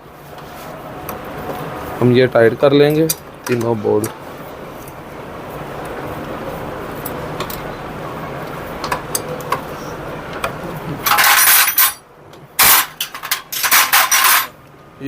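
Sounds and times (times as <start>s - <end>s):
steady background hum: 0.0s - 15.0s
metal tools clattering: 11.0s - 12.0s, 12.6s - 14.6s.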